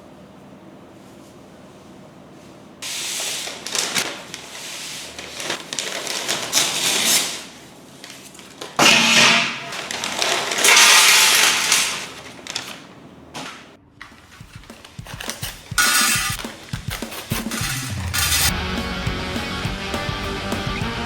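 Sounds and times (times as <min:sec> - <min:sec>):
packaging crinkling and rustling: 0:02.8 - 0:18.0.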